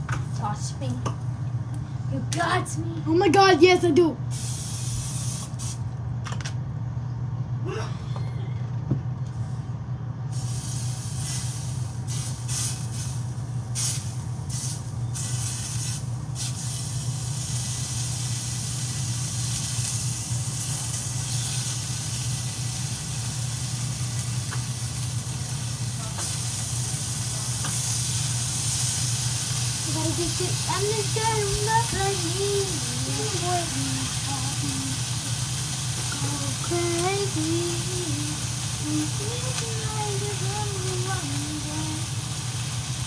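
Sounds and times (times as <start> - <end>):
food sizzling in a frying pan: 4.3 - 5.8, 10.3 - 43.0.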